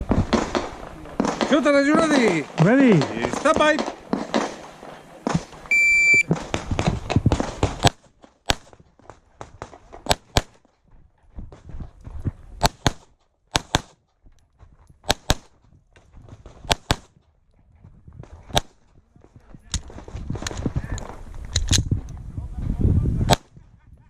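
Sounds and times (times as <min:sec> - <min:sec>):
pistol firing: 0:00.2 - 0:05.6
shot timer start beep: 0:05.7 - 0:06.3.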